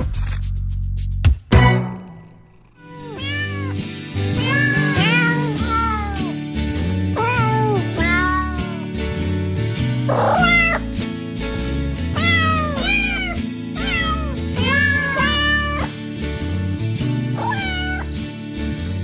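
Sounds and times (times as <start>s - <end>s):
background music with a beat: 0.0s - 2.2s
cat meowing: 2.8s - 6.4s, 7.2s - 8.9s, 10.1s - 10.8s, 12.2s - 15.9s, 17.4s - 18.1s.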